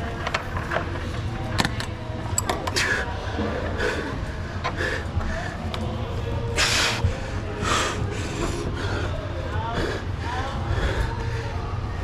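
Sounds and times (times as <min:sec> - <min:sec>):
person breathing hard: 0:02.8 - 0:05.7, 0:06.6 - 0:11.8.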